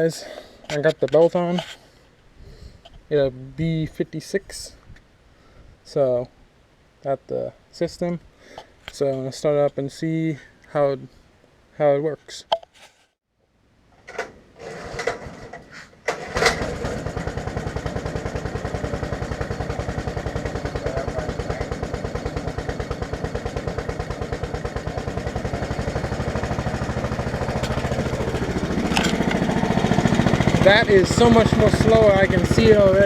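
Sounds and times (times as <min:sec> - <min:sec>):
small engine starting and running: 0:14.6 - 0:33.0.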